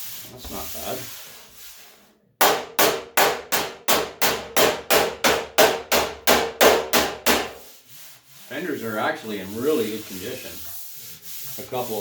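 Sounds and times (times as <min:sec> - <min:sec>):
hammer striking sheet steel: 0:02.4 - 0:07.6.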